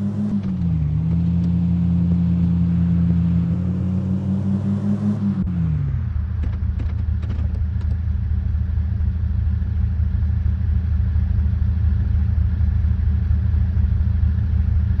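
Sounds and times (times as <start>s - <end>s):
car engine idling: 5.9s - 15.0s.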